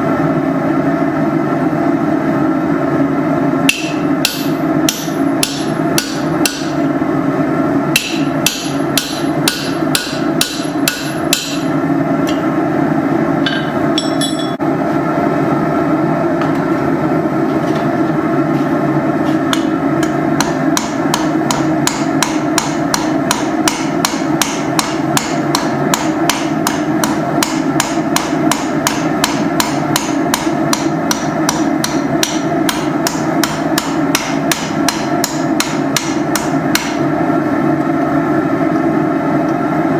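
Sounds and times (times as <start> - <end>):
hammer beating iron: 3.7 - 6.9, 7.9 - 12.4, 13.4 - 14.6, 19.5 - 37.0.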